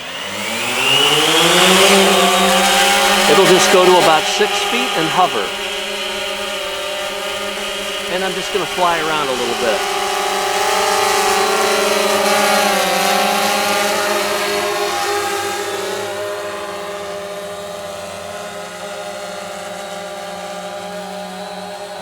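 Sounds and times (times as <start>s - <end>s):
drone propellers whining: 0.0s - 18.3s.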